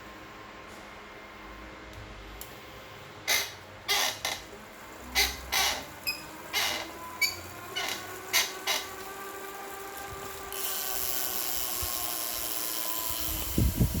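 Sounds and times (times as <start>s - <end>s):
bike trainer squeaking: 3.3s - 14.0s.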